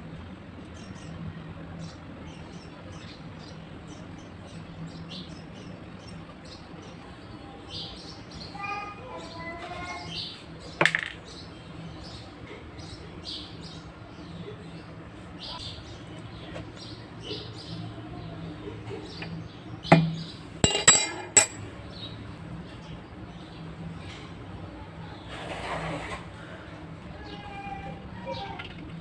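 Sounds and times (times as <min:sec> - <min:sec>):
small birds chirping: 0:00.0 - 0:25.4, 0:26.3 - 0:29.0
hard objects clinking together: 0:19.9 - 0:21.7.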